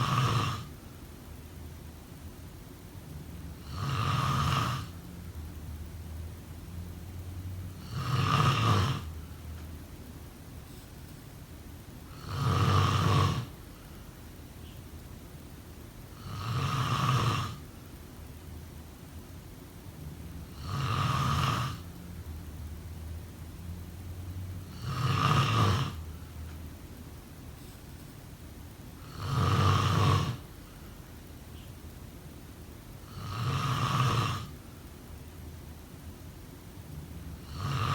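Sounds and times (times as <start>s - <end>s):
person snoring: 0.0s - 0.7s, 3.6s - 5.0s, 7.8s - 9.2s, 12.1s - 13.6s, 16.2s - 17.6s, 20.5s - 21.9s, 24.6s - 26.1s, 29.0s - 30.5s, 33.0s - 34.6s, 37.4s - 37.9s
low steady hiss: 0.0s - 37.9s.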